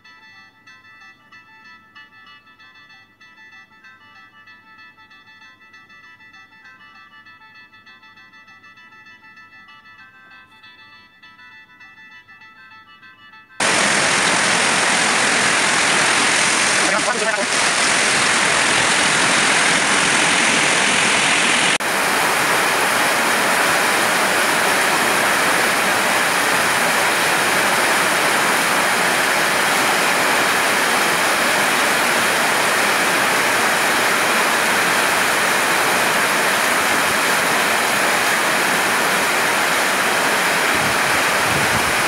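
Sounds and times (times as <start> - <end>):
water rushing: 13.6 - 42.0.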